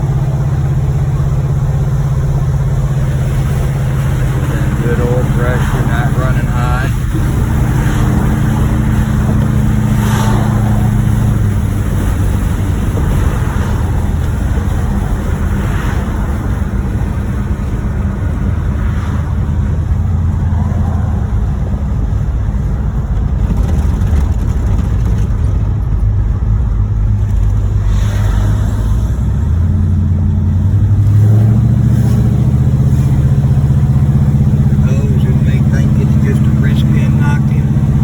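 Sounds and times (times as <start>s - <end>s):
car engine running: 0.0s - 38.0s.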